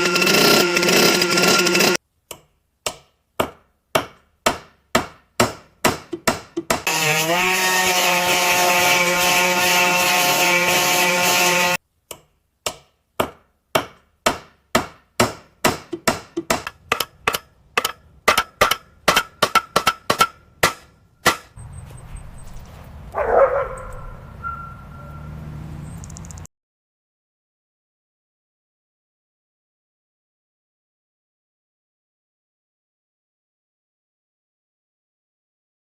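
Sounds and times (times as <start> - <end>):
power tool running: 0.0 - 2.0, 6.8 - 11.8
dog barking: 23.1 - 25.2.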